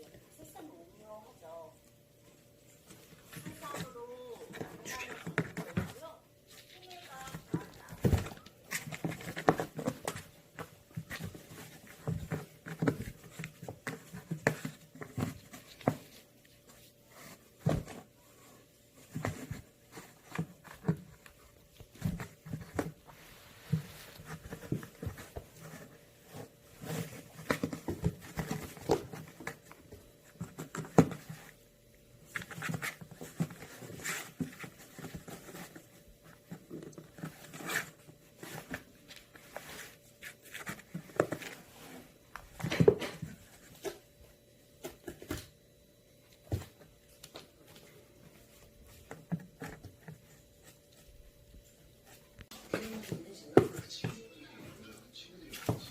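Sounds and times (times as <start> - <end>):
kittens scratching in box: 2.6 - 44.2.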